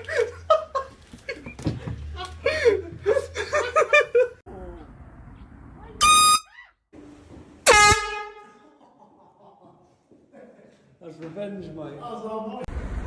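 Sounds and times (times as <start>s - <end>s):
air horn blasts: 6.0s - 6.5s, 7.7s - 8.6s.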